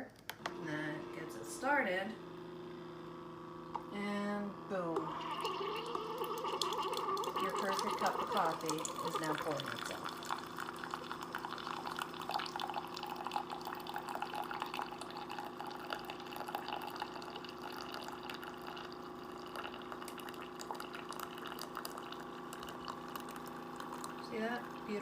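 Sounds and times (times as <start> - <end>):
pump hum: 0.4 - 25.0
coffee dripping into mug: 5.0 - 24.9.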